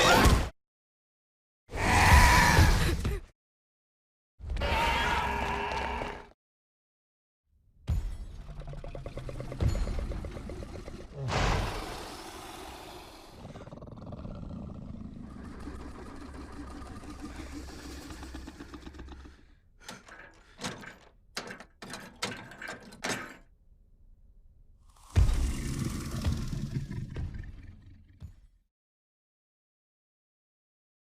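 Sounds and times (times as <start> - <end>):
low growling roar: 11.1 - 19.6
short growling bursts: 11.4 - 19.6.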